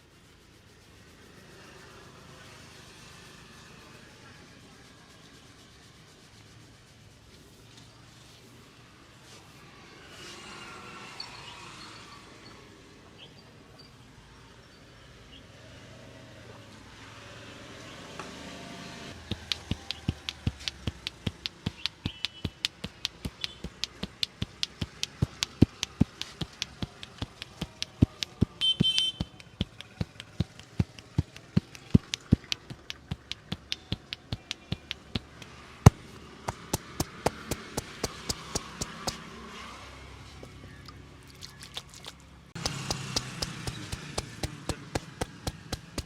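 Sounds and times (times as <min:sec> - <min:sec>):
hands slapping head: 0:19.2 - 0:39.2, 0:42.6 - 0:46.0.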